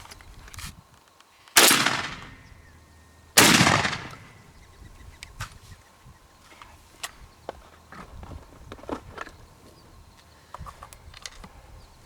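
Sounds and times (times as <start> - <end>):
shotgun shots with echo: 1.6 - 2.6, 3.4 - 4.5.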